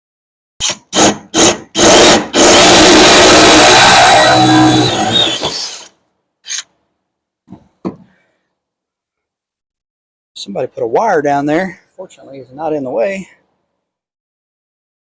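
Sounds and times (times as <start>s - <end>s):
power drill whirring: 0.6s - 5.9s.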